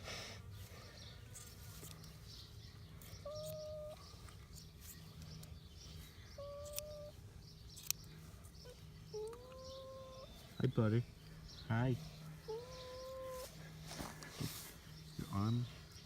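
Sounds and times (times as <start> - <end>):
short even-pitched calls: 3.2 - 4.1.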